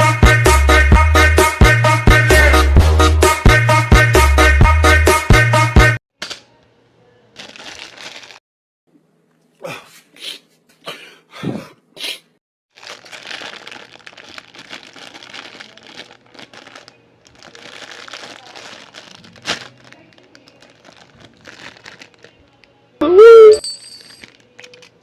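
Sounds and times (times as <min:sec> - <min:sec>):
plastic packaging crinkling and tearing: 0:07.4 - 0:08.4, 0:12.7 - 0:22.8.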